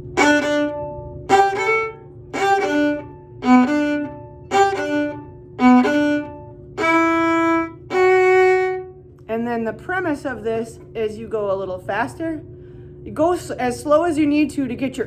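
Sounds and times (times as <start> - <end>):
viola bowed slowly: 0.0 - 9.0.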